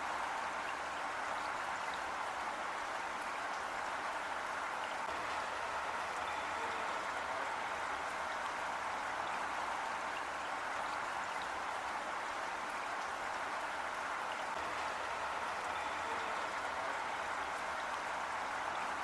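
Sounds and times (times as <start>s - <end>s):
heavy rain falling: 0.0s - 19.0s.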